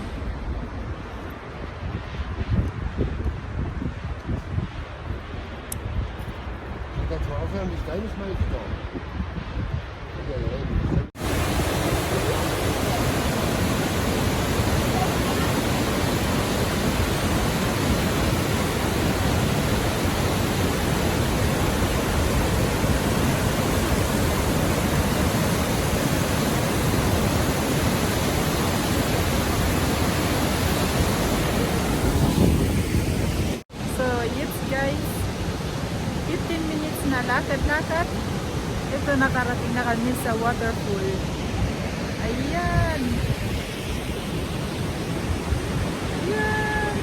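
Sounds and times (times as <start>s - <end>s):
waterfall rushing: 11.2s - 42.7s, 43.3s - 47.0s.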